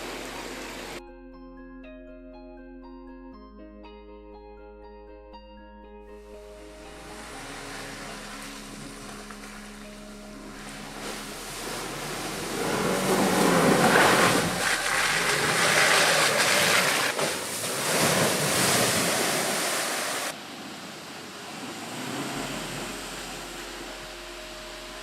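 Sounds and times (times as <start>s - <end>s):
faint steady tones: 6.2s - 16.6s
loud rushing noise: 6.7s - 20.4s.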